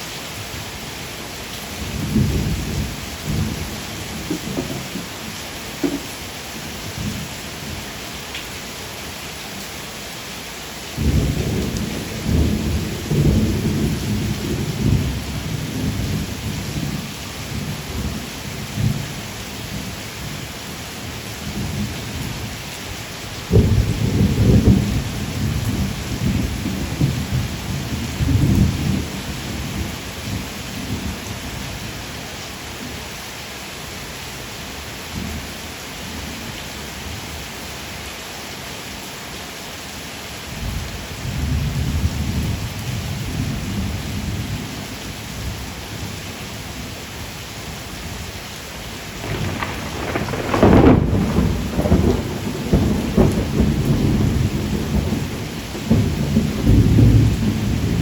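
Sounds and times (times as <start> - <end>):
rain hiss: 0.0 - 58.0
rolling thunder: 1.8 - 7.2, 11.0 - 18.1, 23.5 - 31.1, 49.2 - 58.0.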